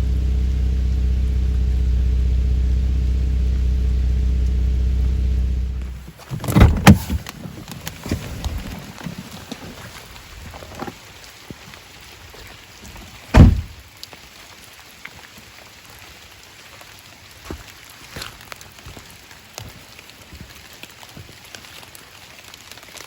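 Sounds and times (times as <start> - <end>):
loud deep thump: 0.0 - 7.2, 13.3 - 13.8.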